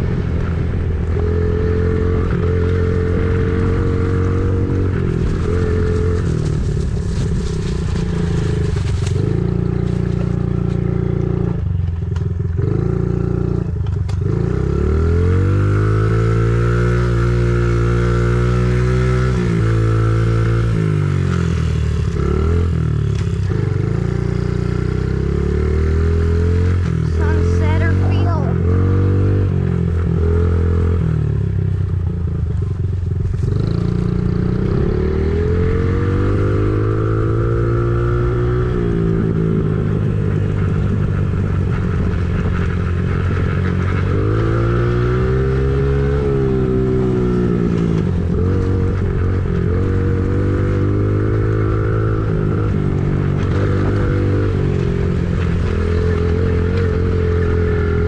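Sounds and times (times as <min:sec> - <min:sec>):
engine revving: 0:12.6 - 0:31.6, 0:33.3 - 0:58.0.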